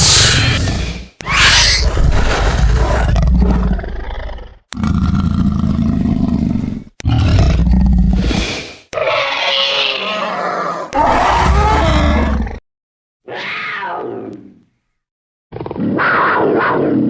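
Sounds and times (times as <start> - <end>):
growling monster roars: 0.0 - 12.6.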